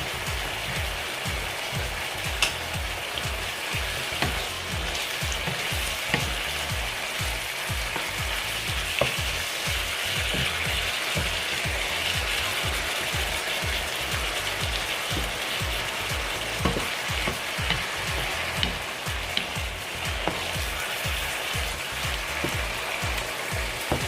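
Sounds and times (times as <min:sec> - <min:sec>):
chicken sizzling in a pan: 0:00.0 - 0:24.0
utensil clicking against pan: 0:02.3 - 0:03.3, 0:03.9 - 0:24.0.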